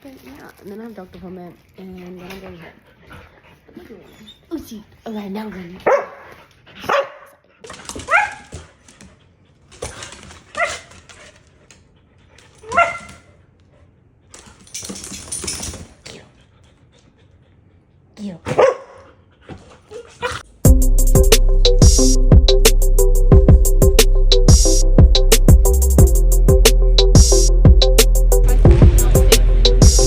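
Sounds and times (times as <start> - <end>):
dog barking: 5.8 - 7.4, 8.0 - 8.6, 10.6 - 10.9, 12.7 - 13.3, 18.5 - 19.2
electronic drum beat music: 20.6 - 30.0
sustained synth notes: 20.7 - 30.0.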